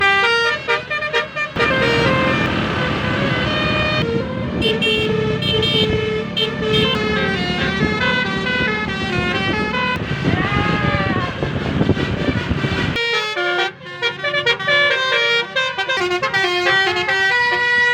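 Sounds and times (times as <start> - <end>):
vehicle melody horn: 0.0 - 10.4, 11.4 - 17.9
vehicle engine rumble: 0.4 - 13.0.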